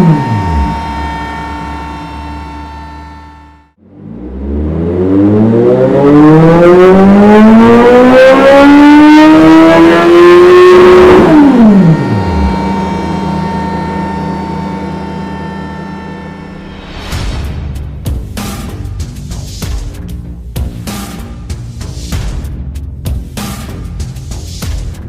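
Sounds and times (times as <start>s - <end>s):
music: 0.0s - 4.3s, 11.2s - 25.0s
motorcycle engine revving: 0.0s - 17.1s.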